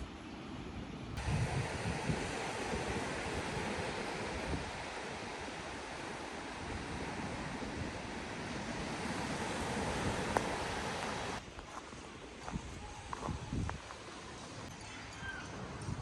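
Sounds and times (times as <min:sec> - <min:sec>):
sea surf on the shore: 0:00.0 - 0:11.5
wind rumbling on microphone: 0:00.8 - 0:11.8, 0:12.4 - 0:14.0.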